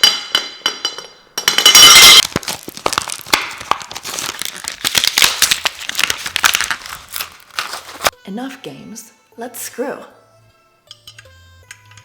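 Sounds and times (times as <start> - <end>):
plastic packaging crinkling: 1.8 - 8.2.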